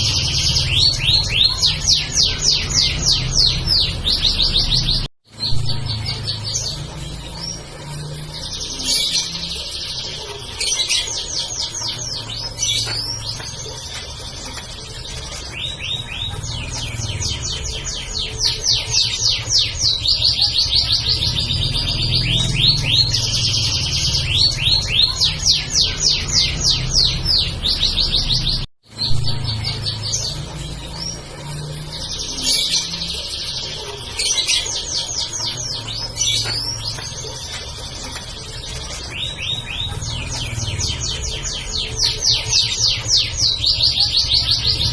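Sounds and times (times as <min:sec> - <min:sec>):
canary singing trills: 0:00.0 - 0:44.9.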